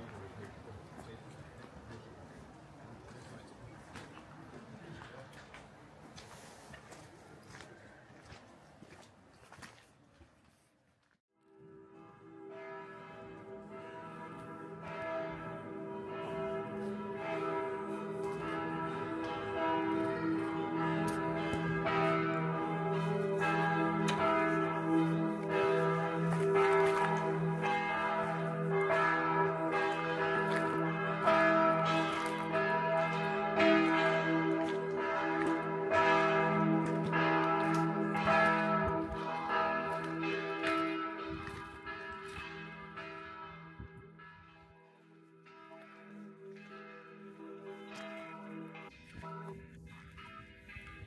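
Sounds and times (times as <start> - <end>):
church bells pealing: 11.6 - 51.0.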